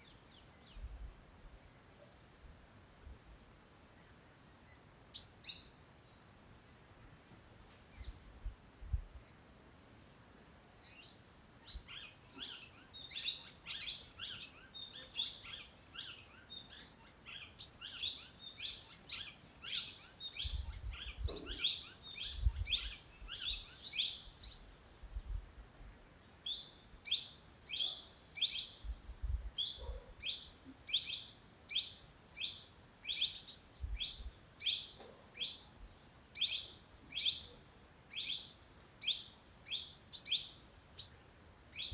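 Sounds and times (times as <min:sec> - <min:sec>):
bird chirping: 0:03.3 - 0:06.2, 0:10.8 - 0:25.6, 0:26.4 - 0:41.9.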